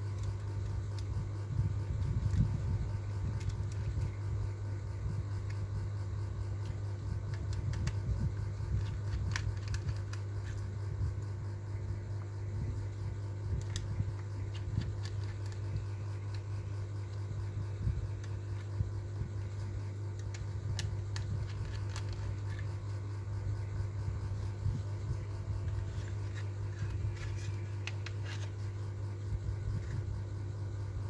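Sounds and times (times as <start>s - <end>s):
steady low hum: 0.0s - 31.0s
small clicks and taps: 13.5s - 17.2s.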